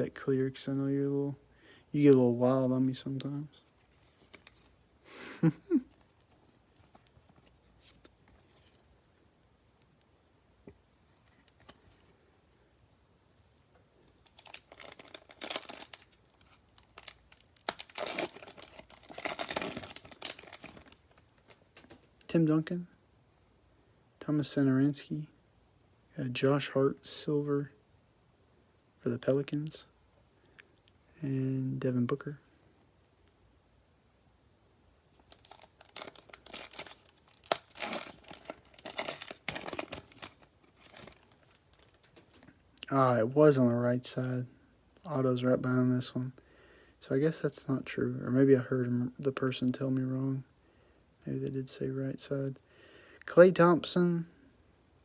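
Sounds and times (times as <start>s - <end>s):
card pack wrapper tearing and crinkling: 14.2s - 22.1s, 35.2s - 42.4s.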